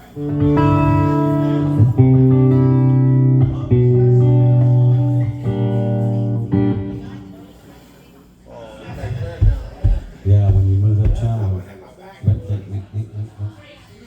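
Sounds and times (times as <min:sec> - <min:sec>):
electric guitar held chords: 0:00.0 - 0:07.4.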